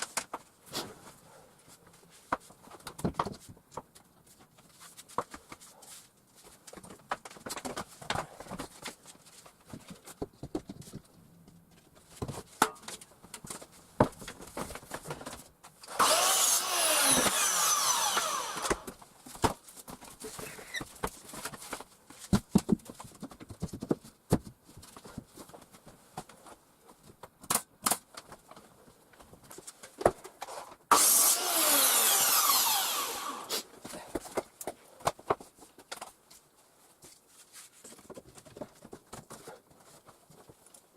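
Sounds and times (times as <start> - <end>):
power tool running: 15.9 - 18.9, 30.9 - 33.6.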